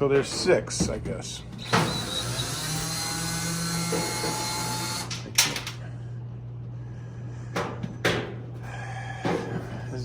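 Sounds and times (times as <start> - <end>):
drill running in reverse: 1.6 - 5.1.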